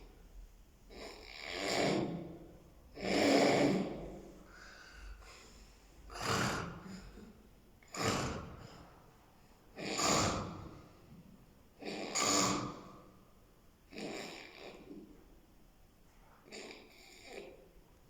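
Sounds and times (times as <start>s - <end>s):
person snoring: 6.1s - 7.2s.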